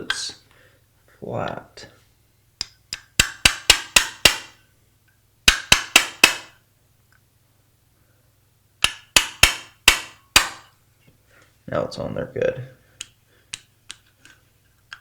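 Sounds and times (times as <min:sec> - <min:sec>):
hammer striking steel pin: 0:02.9 - 0:04.5, 0:05.5 - 0:06.6, 0:08.8 - 0:10.7.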